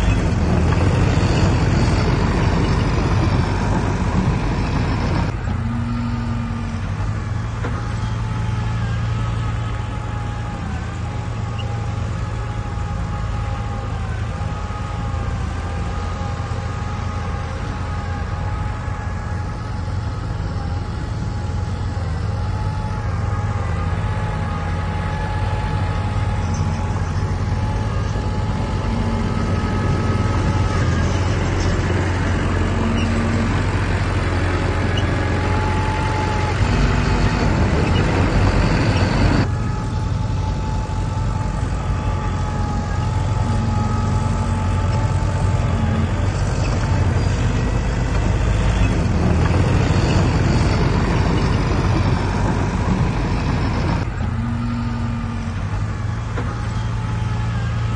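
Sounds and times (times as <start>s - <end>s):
diesel engine deep rumble: 0.0s - 57.9s
mechanical whine: 0.0s - 57.9s.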